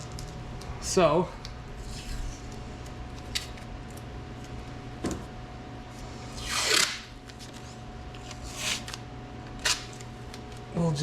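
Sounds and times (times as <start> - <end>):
steady low hum: 0.0 - 11.0
masking tape ripping off roll: 6.4 - 7.1, 8.3 - 9.0, 9.6 - 10.0.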